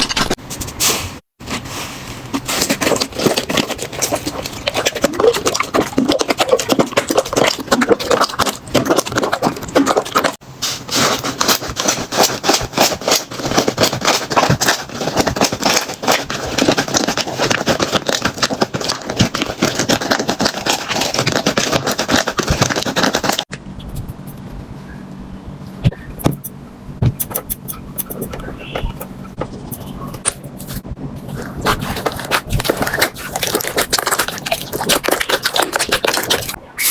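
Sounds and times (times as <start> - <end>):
slime crackling and popping: 31.6 - 36.9.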